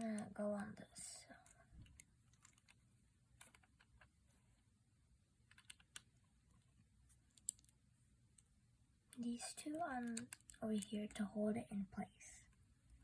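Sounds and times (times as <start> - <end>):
plastic lego pieces clicking: 1.4 - 2.8, 5.5 - 6.2, 7.3 - 7.8, 9.1 - 11.2.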